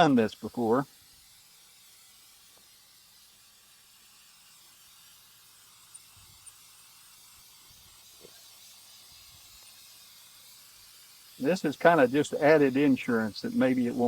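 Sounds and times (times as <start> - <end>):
aerosol can spraying hiss: 0.0 - 14.0
small ticks: 5.8 - 7.2.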